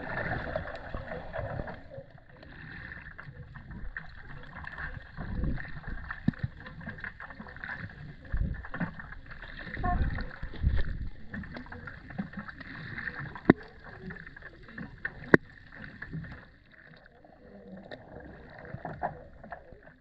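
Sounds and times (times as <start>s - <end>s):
muffled underwater water noise: 0.0s - 20.0s.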